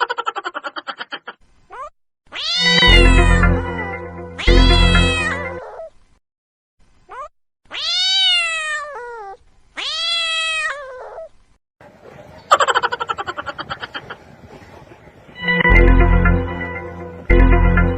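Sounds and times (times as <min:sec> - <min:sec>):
cat meowing: 0:01.7 - 0:03.5, 0:04.4 - 0:05.9, 0:07.1 - 0:11.3.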